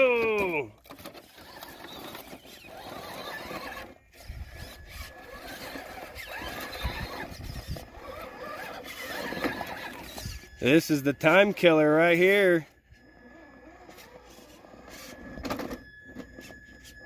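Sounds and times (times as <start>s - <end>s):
electric motor and gears whining: 0.0s - 17.0s
tyres scrabbling on dirt and rock: 0.2s - 12.6s.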